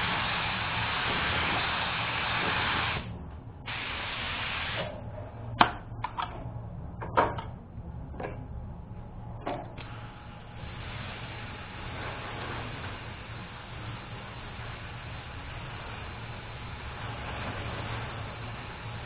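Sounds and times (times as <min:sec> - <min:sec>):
paint spray gun hissing: 0:00.0 - 0:03.1, 0:03.7 - 0:04.8, 0:10.6 - 0:19.0
sharp clicks and knocks: 0:05.6 - 0:07.6.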